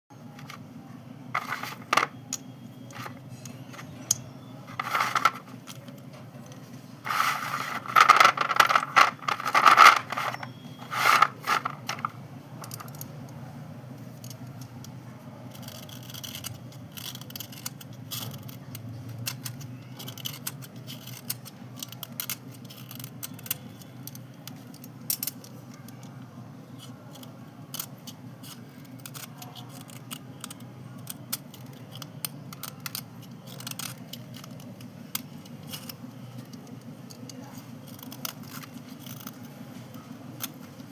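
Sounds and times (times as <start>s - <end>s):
chalk scraping: 7.1s - 12.1s.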